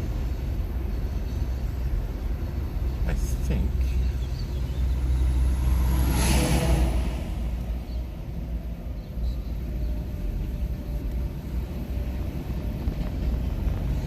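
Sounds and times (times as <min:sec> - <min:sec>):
car road rumble and tyre noise: 0:00.0 - 0:14.0
brief rush of passing air: 0:05.2 - 0:07.9.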